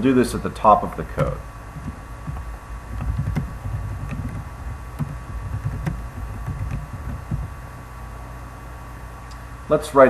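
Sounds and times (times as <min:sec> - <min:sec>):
steady low hum: 0:00.0 - 0:10.0
keystrokes on computer keyboard: 0:01.2 - 0:07.6.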